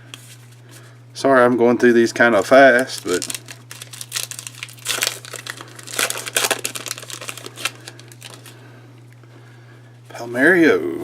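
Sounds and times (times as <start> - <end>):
steady low hum: 0.0 - 11.0
wrapper crinkling: 2.7 - 8.6.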